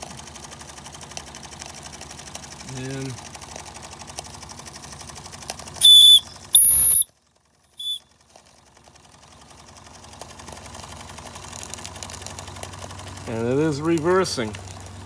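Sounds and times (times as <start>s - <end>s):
toy steam engine chuffing: 0.0s - 7.1s, 7.8s - 8.0s, 8.8s - 15.0s
shrill steam whistle toots: 5.8s - 7.1s, 7.8s - 8.0s.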